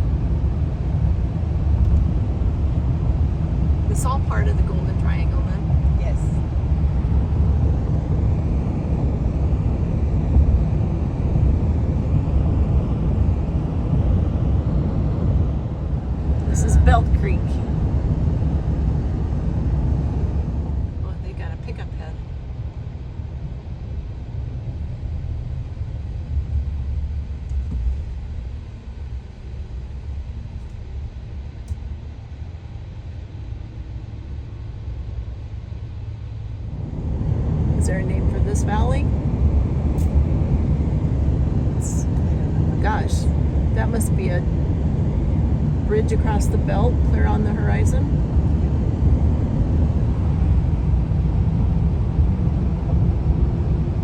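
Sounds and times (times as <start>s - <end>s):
car interior road rumble: 0.0s - 54.0s.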